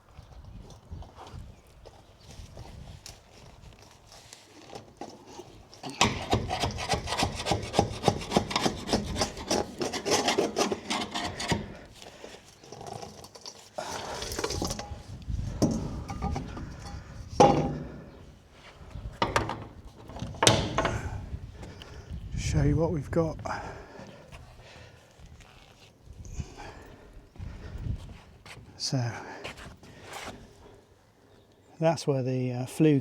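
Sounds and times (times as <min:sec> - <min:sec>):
hand scraping steel deck: 0:04.7 - 0:21.8.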